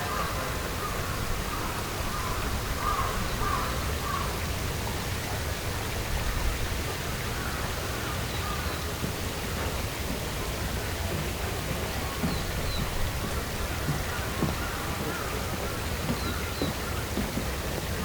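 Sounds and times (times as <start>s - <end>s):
crows cawing: 2.1s - 4.2s.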